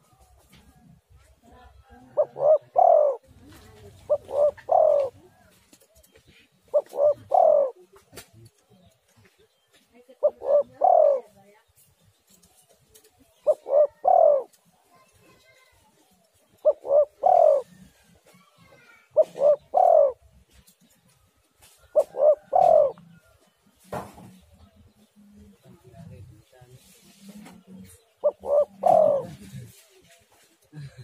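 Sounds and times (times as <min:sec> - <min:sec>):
dove cooing: 0:00.0 - 0:08.9, 0:10.2 - 0:11.4, 0:12.9 - 0:14.7, 0:16.1 - 0:20.6, 0:21.6 - 0:23.5, 0:27.1 - 0:29.9.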